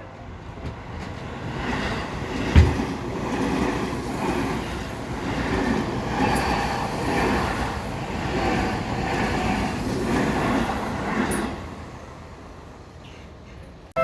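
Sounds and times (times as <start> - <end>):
train wheels rumbling on rails: 0.0 - 12.7
sharp thump: 1.6 - 3.8.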